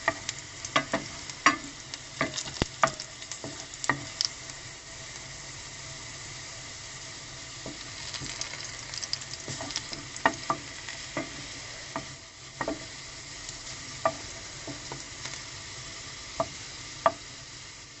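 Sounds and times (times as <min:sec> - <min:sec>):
utensil clicking against pan: 0:00.0 - 0:04.4
garlic sizzling in a pan: 0:00.0 - 0:18.0.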